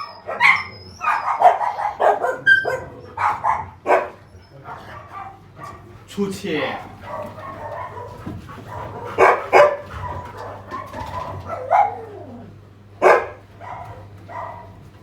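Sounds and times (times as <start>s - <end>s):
dog whines and yips: 0.0s - 1.5s
dogs barking: 0.0s - 15.0s.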